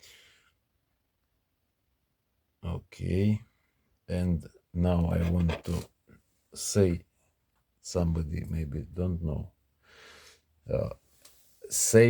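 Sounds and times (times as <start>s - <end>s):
faint breath-like hiss: 0.0s - 0.6s, 9.8s - 12.0s.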